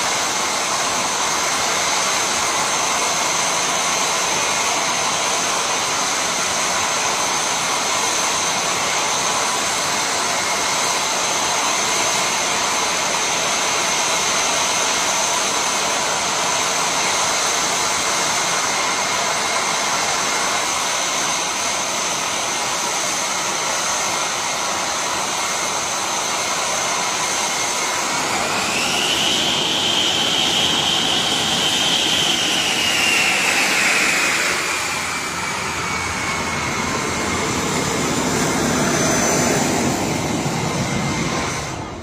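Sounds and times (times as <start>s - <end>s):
continuous rushing noise: 17.8s - 42.0s.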